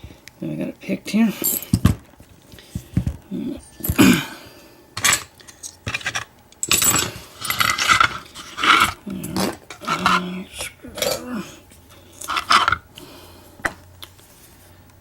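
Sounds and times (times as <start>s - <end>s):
metal padlock and tools clinking: 5.0s - 11.3s.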